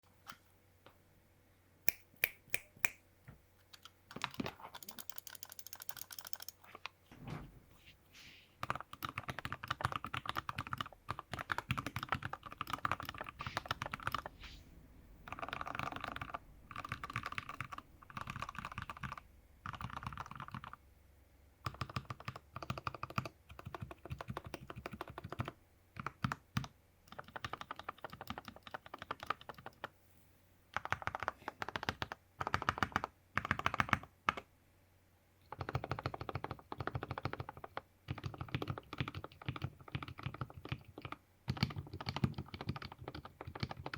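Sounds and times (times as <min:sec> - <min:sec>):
mechanical keyboard typing: 0:03.7 - 0:06.8, 0:08.6 - 0:14.3, 0:15.2 - 0:20.8, 0:21.6 - 0:29.9, 0:30.8 - 0:34.4, 0:35.5 - 0:43.9.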